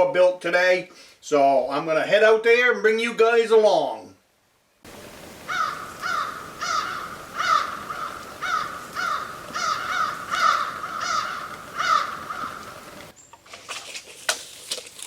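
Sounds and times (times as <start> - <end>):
faint background hiss: 0.0 - 15.0
bird cawing harshly: 5.0 - 13.1.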